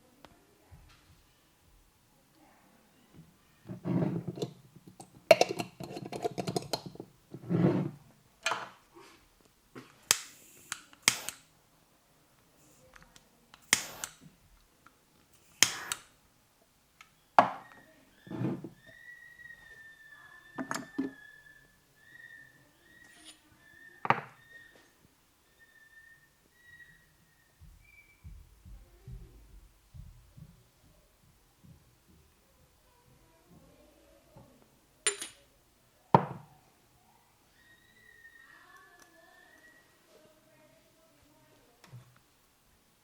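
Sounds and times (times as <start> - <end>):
hair cracking snaps: 9.9 - 11.5, 13.2 - 14.2, 15.4 - 16.2
quick clicks: 10.1 - 11.5
high whistled note: 25.5 - 28.2.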